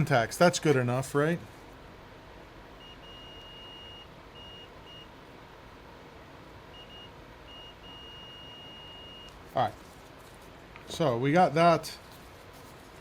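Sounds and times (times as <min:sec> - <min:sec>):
multimeter continuity beeps: 0:02.8 - 0:05.1, 0:06.7 - 0:09.4.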